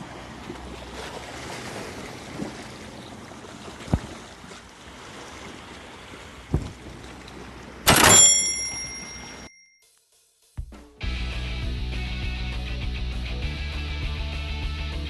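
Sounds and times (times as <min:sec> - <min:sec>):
sea waves washing on shore: 0:00.0 - 0:07.9.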